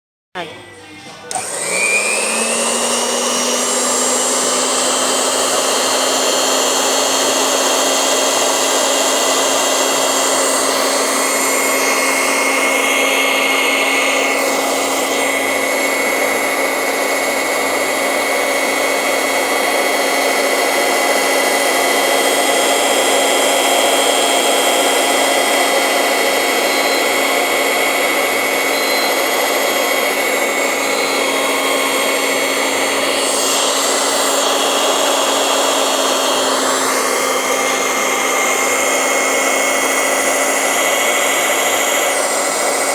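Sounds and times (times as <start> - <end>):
electric cutting machine running: 1.1 - 42.9.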